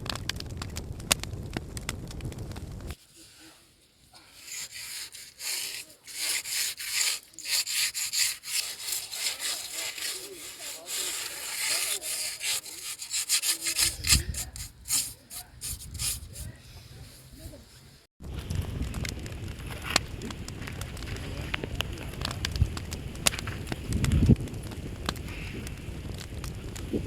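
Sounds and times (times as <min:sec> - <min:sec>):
rough scraping strokes: 0:02.9 - 0:17.9.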